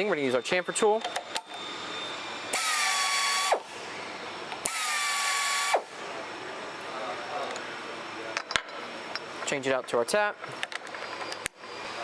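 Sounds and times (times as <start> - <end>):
air motor whining: 0.0 - 8.3.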